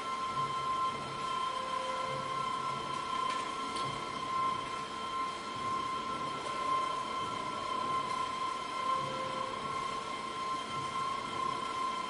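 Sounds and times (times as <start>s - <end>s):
continuous mechanical noise: 0.0s - 12.0s
factory machinery whine: 0.0s - 12.0s.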